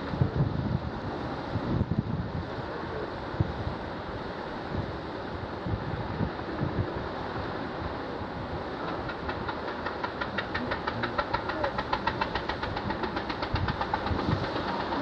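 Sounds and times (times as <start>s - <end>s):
surf: 0.0s - 15.0s
wind: 0.0s - 15.0s
boat engine knocking: 8.8s - 15.0s.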